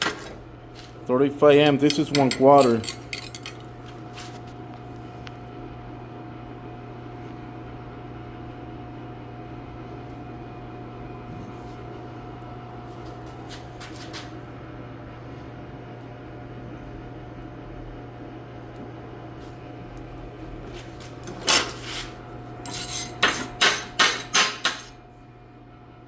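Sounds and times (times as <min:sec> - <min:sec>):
stick welder humming: 0:00.0 - 0:04.5, 0:20.6 - 0:25.0.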